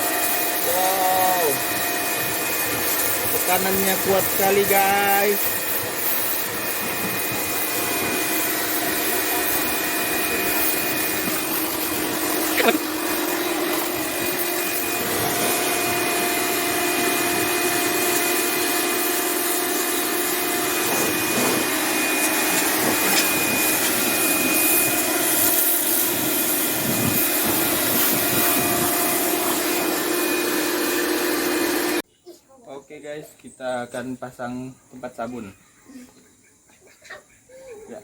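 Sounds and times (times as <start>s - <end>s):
high-pressure water jet hissing: 0.0s - 32.0s
pressure washer motor humming: 0.0s - 32.0s.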